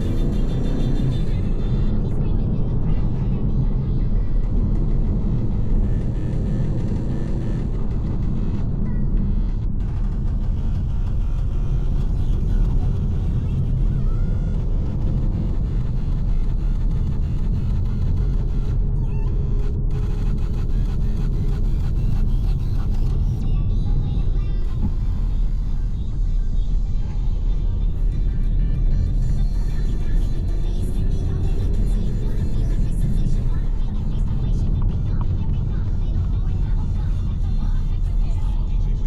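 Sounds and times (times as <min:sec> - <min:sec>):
car engine and road noise: 0:00.0 - 0:39.0.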